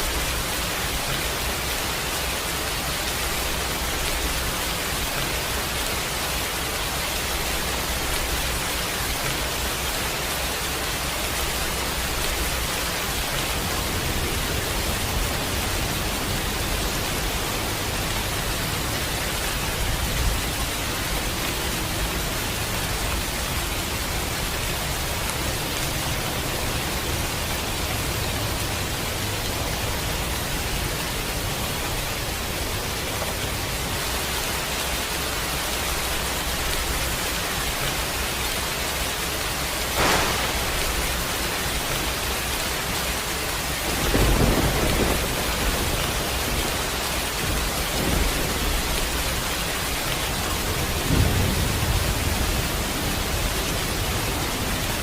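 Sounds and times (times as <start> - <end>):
heavy rain: 0.0 - 55.0
thunder rumbling: 39.9 - 54.9
sharp thunder crack: 40.0 - 41.9.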